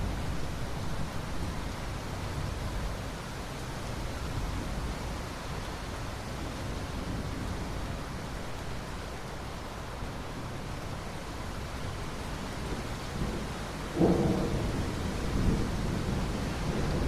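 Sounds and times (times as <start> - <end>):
steady rainfall: 0.0 - 17.0.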